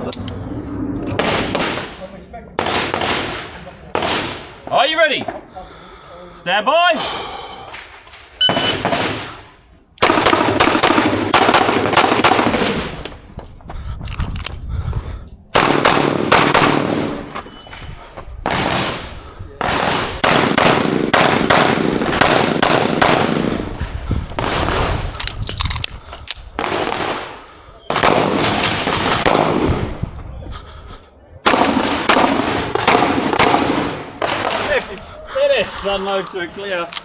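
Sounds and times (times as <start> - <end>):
pistol shots: 2.6 - 4.6, 8.5 - 9.4, 10.0 - 13.0, 15.6 - 17.3, 18.5 - 23.6, 26.6 - 27.3, 31.4 - 35.0.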